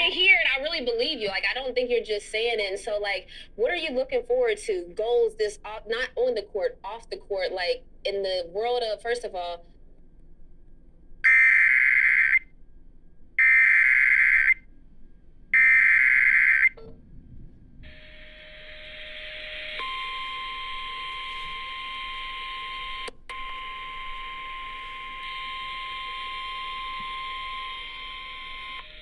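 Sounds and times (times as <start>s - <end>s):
shrill digital data tones: 17.8s - 29.0s
radio hiss: 17.9s - 29.0s.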